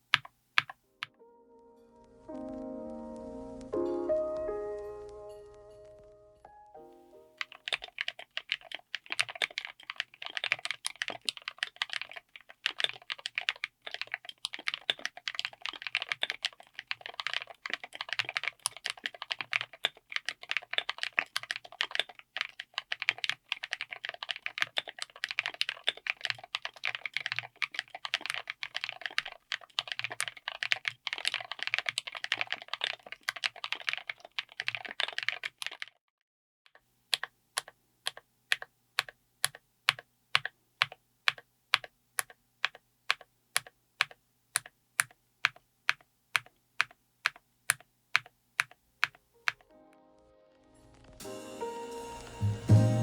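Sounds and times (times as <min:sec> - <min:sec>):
mechanical keyboard typing: 0:00.0 - 0:00.8, 0:07.4 - 0:36.0, 0:37.1 - 0:49.7.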